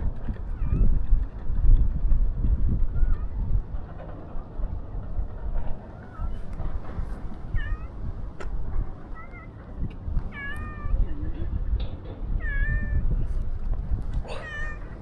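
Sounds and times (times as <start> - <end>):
low rumbling background noise: 0.0 - 15.0
cats meowing: 7.5 - 8.0, 9.0 - 9.6, 10.3 - 11.1, 12.3 - 13.2, 14.2 - 15.0.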